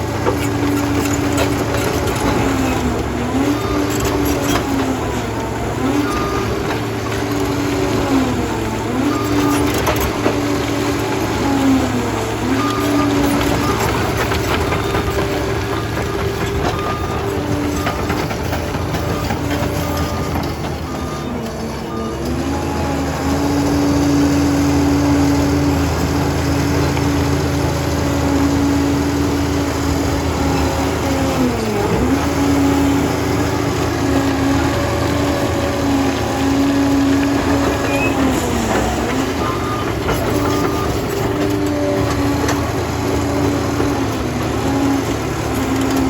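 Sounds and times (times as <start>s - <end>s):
bulldozer diesel engine running: 0.0s - 46.0s
short repeated beeps: 37.8s - 38.4s.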